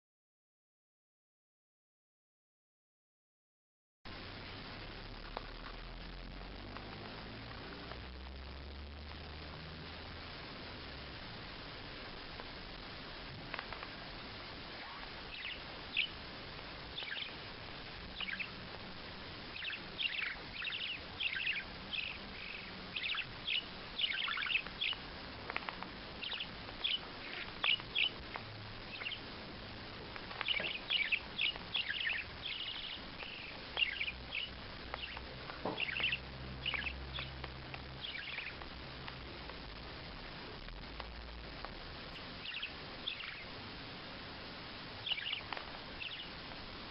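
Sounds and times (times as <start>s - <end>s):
steady background hiss: 4.1s - 46.9s
high chirping calls: 13.6s - 38.6s, 42.1s - 43.6s, 44.9s - 46.9s.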